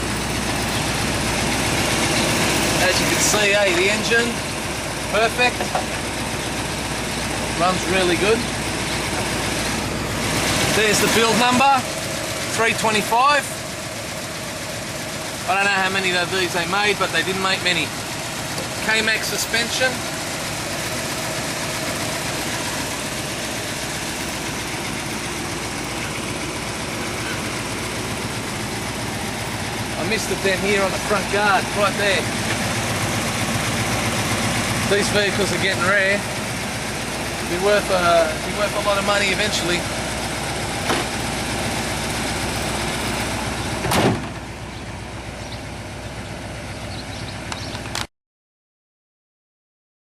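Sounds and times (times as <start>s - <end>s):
car engine idling: 0.0s - 48.1s
loud thump: 40.8s - 41.2s, 43.8s - 44.4s.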